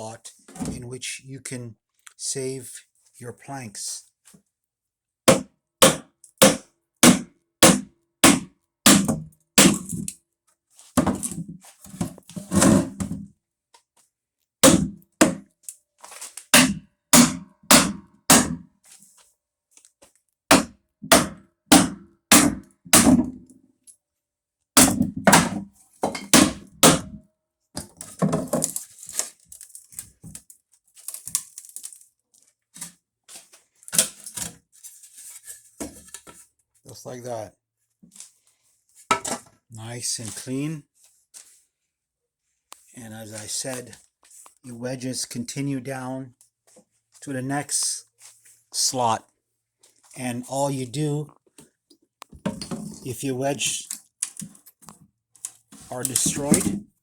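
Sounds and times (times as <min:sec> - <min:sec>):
hammer knocking wooden wedges: 0:05.3 - 0:09.9, 0:14.6 - 0:15.4, 0:16.6 - 0:18.6, 0:20.5 - 0:23.4, 0:24.8 - 0:27.2.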